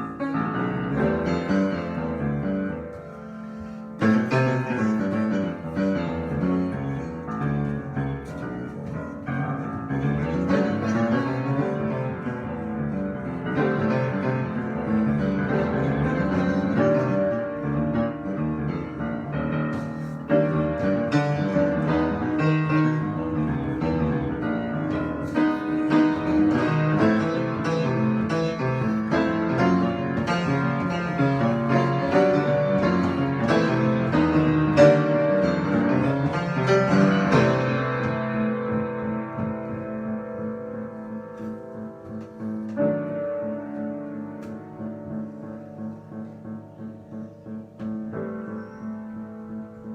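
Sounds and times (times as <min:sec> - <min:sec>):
solo piano improvisation: 0:00.0 - 0:49.9.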